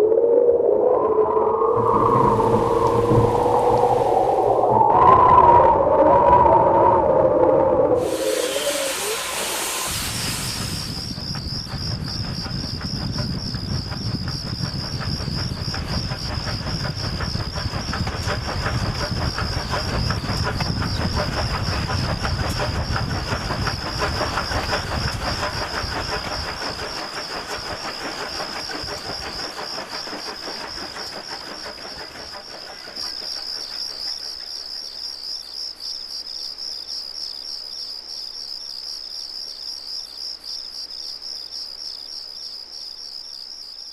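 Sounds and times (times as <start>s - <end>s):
crickets chirping: 0.0s - 43.9s
steam engine chuffing: 8.0s - 34.4s.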